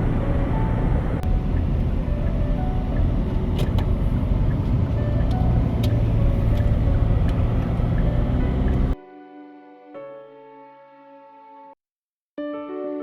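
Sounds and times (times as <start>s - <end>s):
passing traffic rumble: 0.0s - 9.0s
electric piano music: 0.0s - 11.8s, 12.4s - 13.0s.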